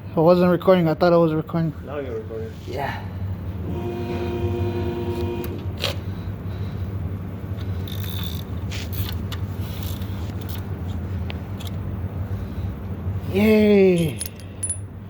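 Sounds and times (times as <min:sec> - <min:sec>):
steady low hum: 0:00.0 - 0:15.0
metallic clicks of tools: 0:14.0 - 0:14.9.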